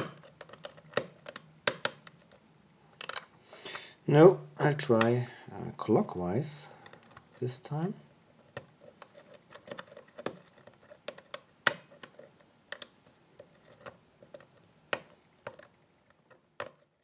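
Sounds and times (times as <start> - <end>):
lock pick clicking in lock: 0.0 - 2.4, 3.0 - 3.3, 8.6 - 16.9.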